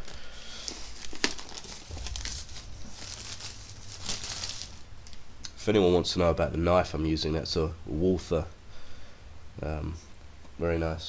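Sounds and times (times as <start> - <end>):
packaging crinkling and rustling: 0.0 - 5.3.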